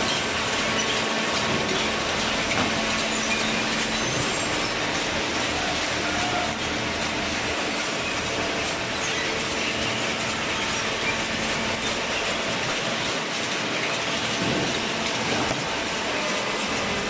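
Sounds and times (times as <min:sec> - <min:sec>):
running machinery: 0:00.0 - 0:17.0.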